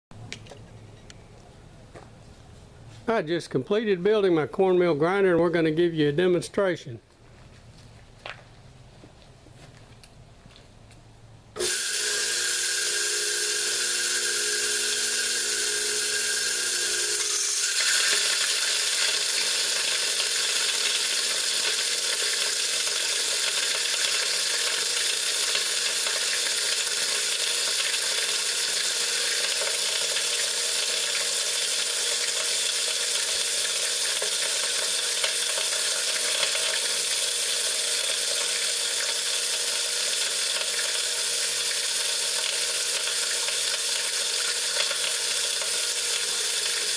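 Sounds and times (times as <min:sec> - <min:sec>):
electric motor hum: 0:11.6 - 0:46.9
grinder milling corn: 0:11.6 - 0:46.9.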